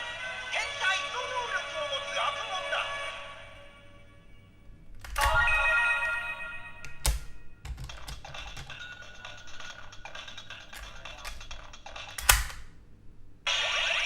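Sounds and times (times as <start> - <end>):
bright electronic ringing tone: 5.2 - 7.5
toy clicks: 6.9 - 12.7.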